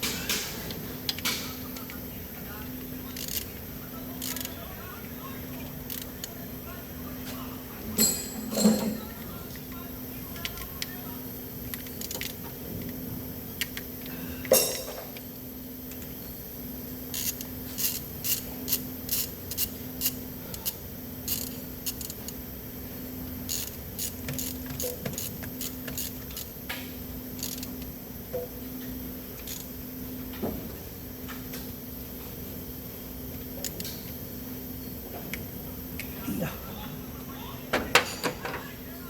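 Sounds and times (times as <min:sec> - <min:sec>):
steady low hum: 0:00.0 - 0:39.0
hand tools clicking and tapping: 0:23.5 - 0:26.8.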